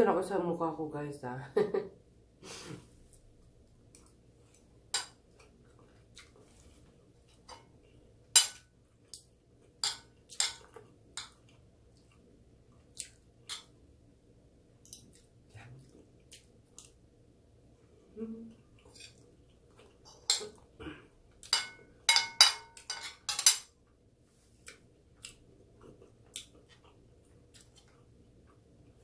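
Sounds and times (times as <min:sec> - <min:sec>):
cutlery clinking on a plate: 0:09.8 - 0:11.4, 0:21.5 - 0:23.7.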